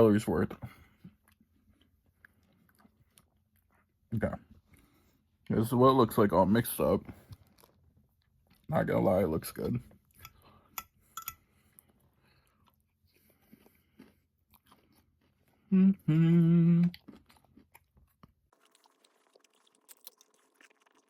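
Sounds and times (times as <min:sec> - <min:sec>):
person chewing crunchy food: 0:00.8 - 0:04.0, 0:07.2 - 0:08.7, 0:11.5 - 0:21.0
person humming mmm: 0:15.7 - 0:17.1.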